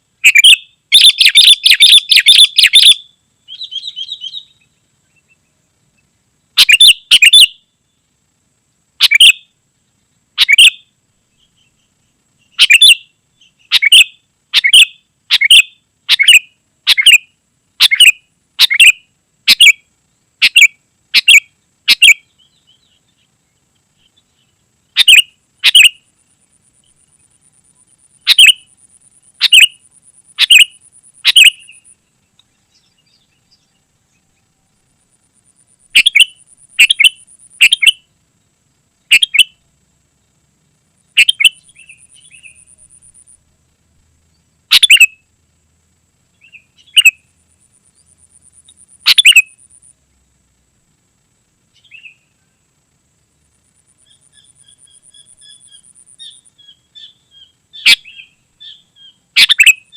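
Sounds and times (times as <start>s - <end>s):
faint high buzzing trill: 0.0s - 59.9s
bird calling sharp notes: 0.2s - 4.7s, 6.6s - 7.6s, 9.0s - 9.5s, 10.4s - 10.8s, 12.5s - 19.8s, 20.4s - 22.3s, 25.0s - 26.0s, 28.2s - 28.7s, 29.4s - 32.0s, 35.9s - 38.0s, 39.1s - 39.6s, 41.2s - 43.0s, 44.7s - 45.2s, 49.0s - 49.6s, 54.1s - 59.9s.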